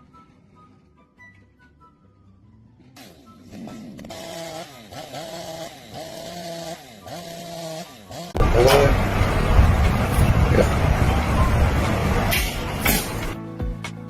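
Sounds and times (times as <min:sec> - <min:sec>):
small motor running: 0:03.0 - 0:12.2.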